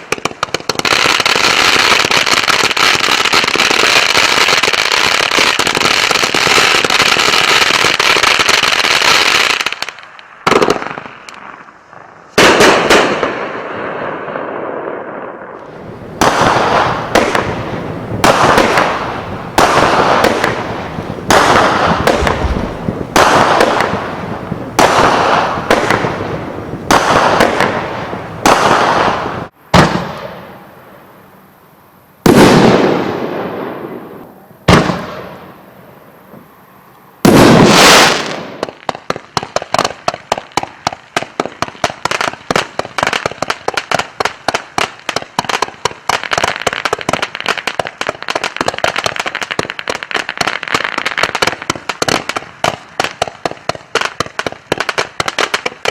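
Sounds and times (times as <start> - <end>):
fireworks bangs: 0.0 - 31.0, 32.2 - 36.5, 37.2 - 55.9
crackling pops: 15.6 - 30.2
big bangs with long tail: 16.1 - 30.6.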